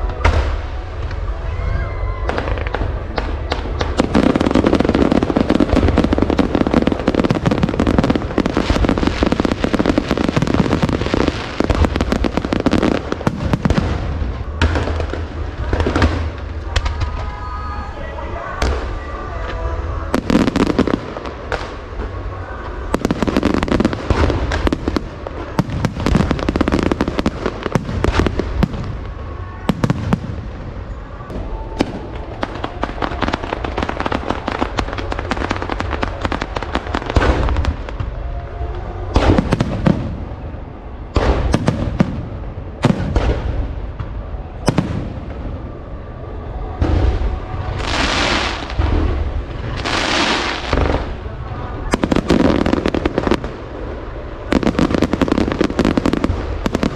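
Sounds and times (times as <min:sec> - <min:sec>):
fireworks bangs: 0:00.0 - 0:56.9
fireworks crackling: 0:00.0 - 0:56.9
low rumble: 0:00.0 - 0:56.9.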